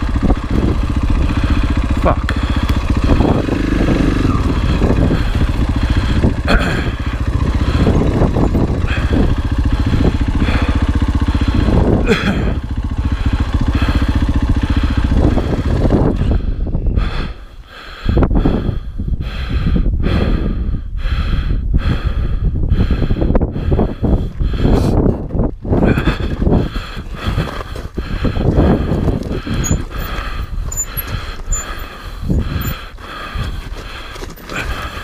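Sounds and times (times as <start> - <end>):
dirt bike engine revving: 0.0 - 16.8, 25.8 - 35.0.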